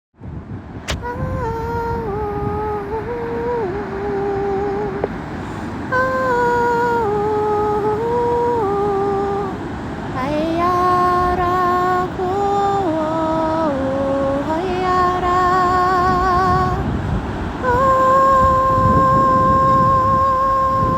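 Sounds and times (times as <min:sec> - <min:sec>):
steady rushing noise: 0:00.6 - 0:13.0.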